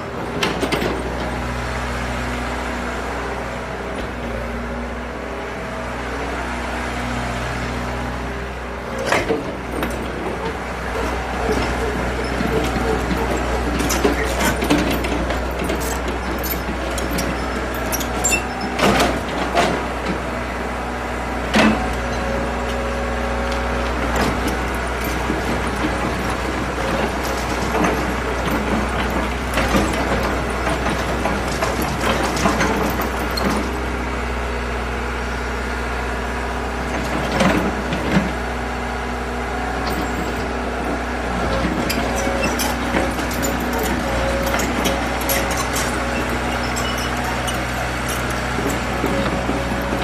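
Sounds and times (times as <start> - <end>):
excavator diesel engine running: 0.0 - 50.0
metal clanks and knocks: 9.0 - 20.2, 23.8 - 33.8, 39.8 - 50.0.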